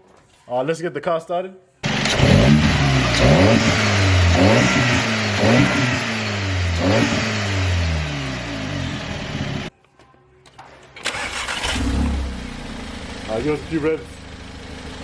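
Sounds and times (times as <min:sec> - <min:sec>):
car engine revving: 0:01.8 - 0:09.7, 0:11.2 - 0:15.0.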